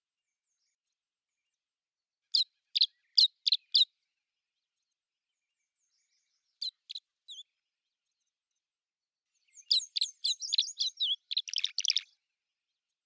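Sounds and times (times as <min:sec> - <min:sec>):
small bird chirping: 0:02.3 - 0:04.0, 0:04.8 - 0:08.3, 0:09.3 - 0:12.2.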